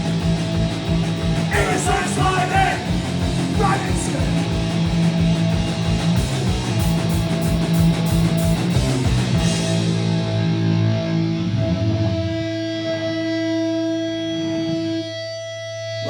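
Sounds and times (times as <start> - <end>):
punk band playing: 0.0 - 12.2.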